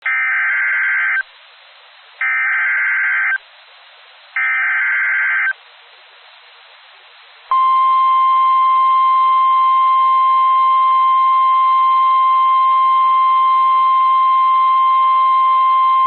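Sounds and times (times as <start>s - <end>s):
faint hiss: 1.2s - 2.2s, 3.4s - 4.4s, 5.5s - 9.1s
steady attention tone: 7.5s - 16.0s.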